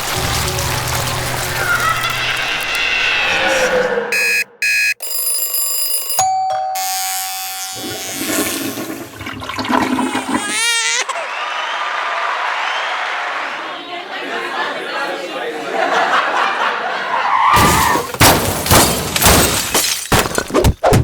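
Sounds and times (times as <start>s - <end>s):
held tone: 3.4s - 9.0s
brief electronic buzzes: 6.8s - 9.1s.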